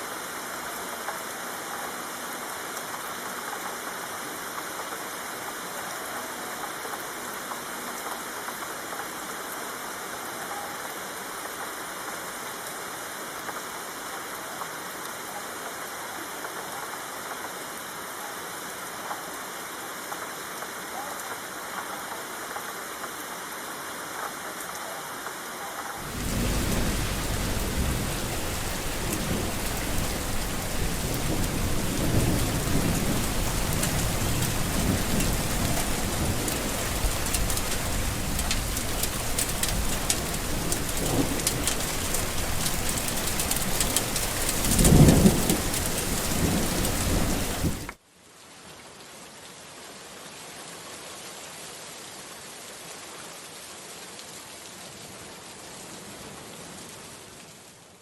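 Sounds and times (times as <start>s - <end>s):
heavy rain falling: 0.0s - 48.0s
thunder rumbling: 26.0s - 47.9s.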